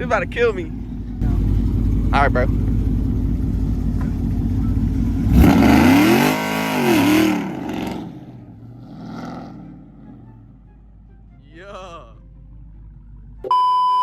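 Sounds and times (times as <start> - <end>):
muscle car engine revving: 0.0 - 11.2.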